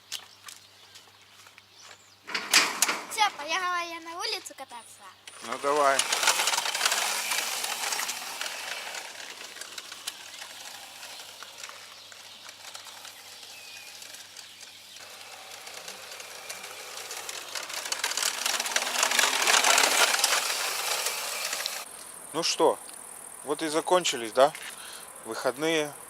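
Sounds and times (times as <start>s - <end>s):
quad bike motor chattering: 5.2s - 22.1s
tyres crunching: 5.2s - 22.1s.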